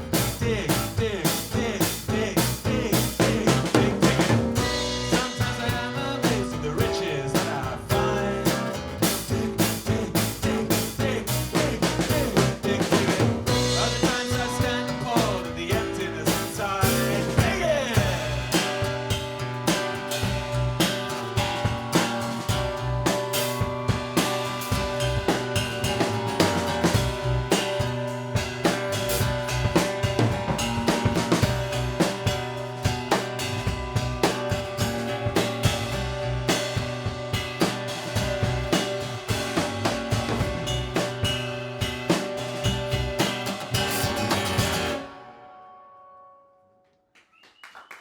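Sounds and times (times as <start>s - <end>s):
snare and bass drum hits: 0.0s - 7.6s
live rock band playing: 0.0s - 45.2s.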